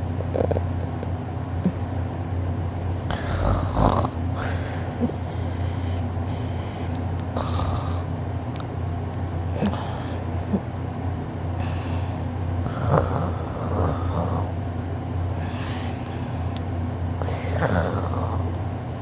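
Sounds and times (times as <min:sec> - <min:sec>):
man snoring: 0:03.1 - 0:06.5, 0:07.4 - 0:08.1, 0:12.6 - 0:14.6, 0:17.2 - 0:18.5.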